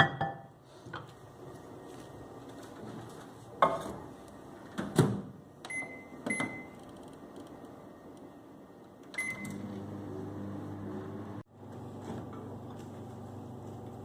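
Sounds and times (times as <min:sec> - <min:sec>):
keypad beeps: 0:05.7 - 0:06.8, 0:09.2 - 0:09.6.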